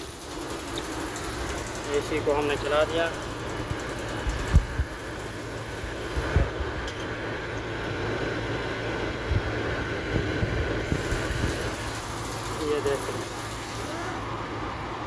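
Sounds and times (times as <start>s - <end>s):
car engine idling: 0.0s - 7.4s, 10.8s - 15.0s.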